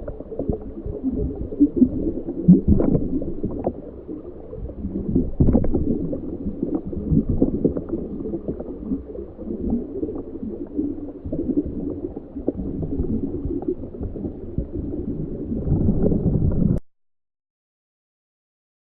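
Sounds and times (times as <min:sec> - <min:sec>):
small underwater pops: 0:00.0 - 0:15.0
underwater churning and gurgling: 0:00.0 - 0:16.8.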